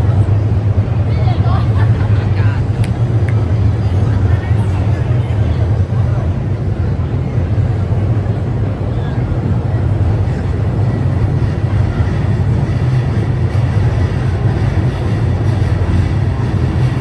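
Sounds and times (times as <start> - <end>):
low rumble of city noise: 0.0 - 17.0.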